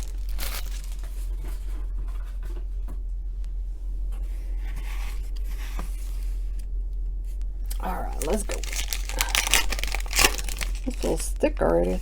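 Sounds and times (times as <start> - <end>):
packaging rustling and scraping: 0.0 - 2.6, 8.1 - 11.3
low electrical hum: 0.0 - 12.0.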